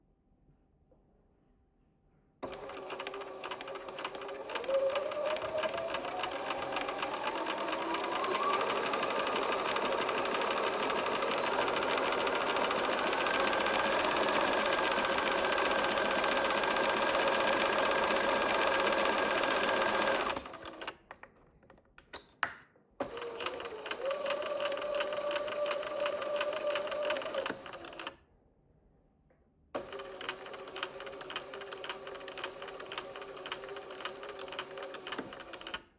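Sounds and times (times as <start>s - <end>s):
sewing machine motor whine: 2.4s - 21.0s, 23.0s - 28.2s, 29.8s - 35.8s
sewing machine bobbin clatter: 2.4s - 21.3s, 23.0s - 28.2s, 29.8s - 35.9s.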